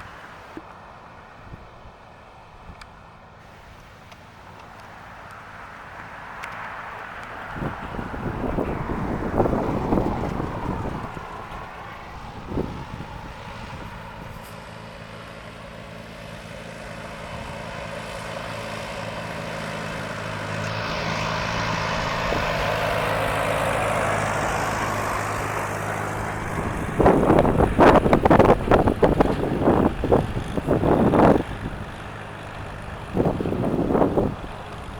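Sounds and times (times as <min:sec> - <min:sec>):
tractor engine running: 0:00.0 - 0:34.9
wind buffeting microphone: 0:07.0 - 0:14.4, 0:17.2 - 0:34.9.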